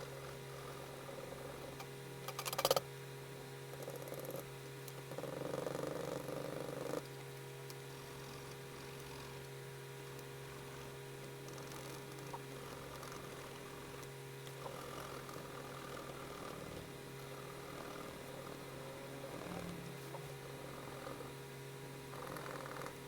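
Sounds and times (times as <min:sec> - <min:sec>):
low electrical hum: 0:00.0 - 0:23.0.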